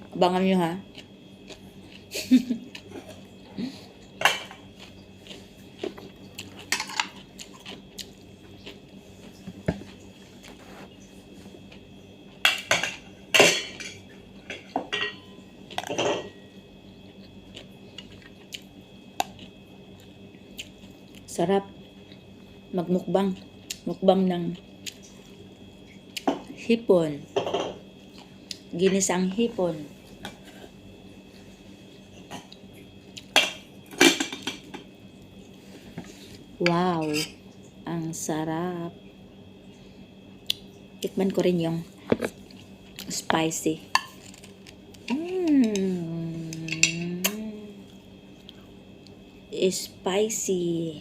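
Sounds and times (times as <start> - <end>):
cutlery clinking against a plate: 12.5 - 16.3
spoon scraping a dish: 37.0 - 37.4.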